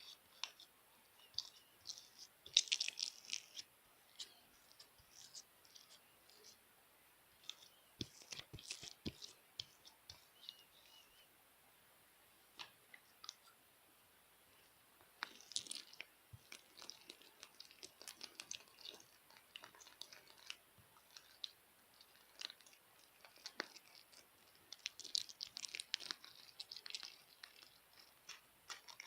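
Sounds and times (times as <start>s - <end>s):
slime squeezed crackling and popping: 1.3s - 3.6s, 15.2s - 29.0s.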